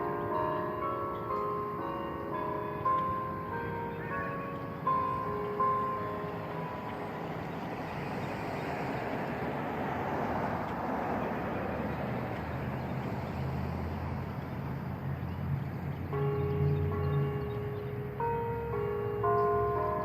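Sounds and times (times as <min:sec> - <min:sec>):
church bell: 0:00.0 - 0:09.4, 0:14.8 - 0:20.0
vehicle passing: 0:00.1 - 0:20.0.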